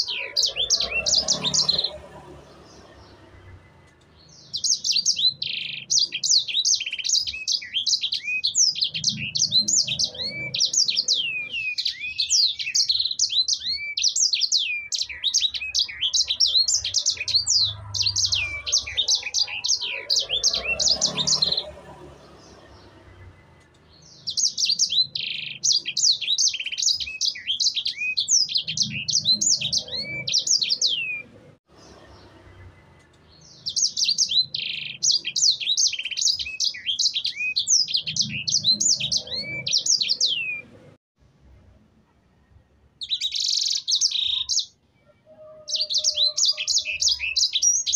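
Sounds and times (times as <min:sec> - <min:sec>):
canary singing: 0:00.0 - 0:40.9, 0:43.0 - 0:47.9.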